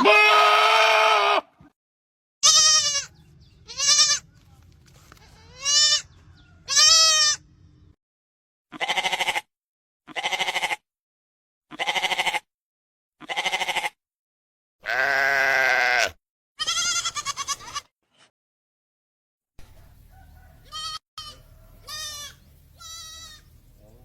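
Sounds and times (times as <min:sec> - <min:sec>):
goat bleating: 0:00.0 - 0:01.7, 0:02.4 - 0:04.3, 0:05.1 - 0:07.4, 0:08.7 - 0:09.5, 0:10.1 - 0:10.8, 0:11.7 - 0:12.5, 0:13.2 - 0:14.0, 0:14.8 - 0:17.9, 0:20.6 - 0:24.0.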